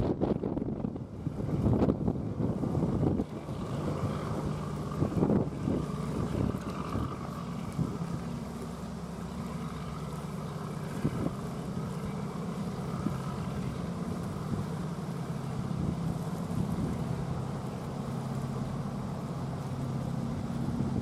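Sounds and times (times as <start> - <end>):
engine humming: 0.0 - 21.0.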